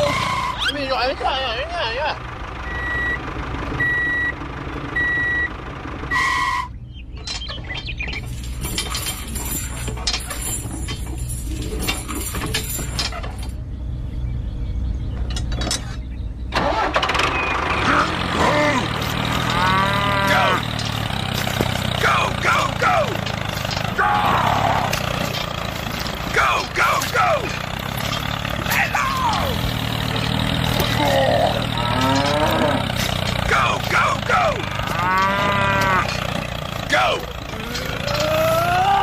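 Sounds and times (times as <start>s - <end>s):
low engine rumble: 0.0s - 39.0s
reversing alarm beeps: 2.6s - 3.2s, 3.8s - 4.4s, 5.0s - 5.5s
crackling rattling noise: 18.1s - 38.5s.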